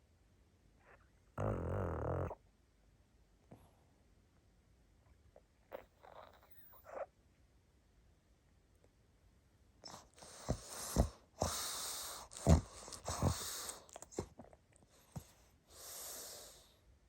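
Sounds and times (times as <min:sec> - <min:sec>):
dog snoring: 0:01.4 - 0:02.4, 0:05.7 - 0:07.1, 0:09.8 - 0:16.7
deep snorts: 0:09.9 - 0:14.4.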